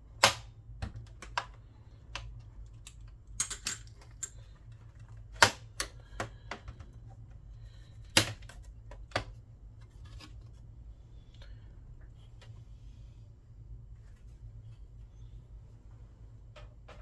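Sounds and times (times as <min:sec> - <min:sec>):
low steady hum: 0:00.0 - 0:17.0
sharp clicks and knocks of handling: 0:00.2 - 0:07.4.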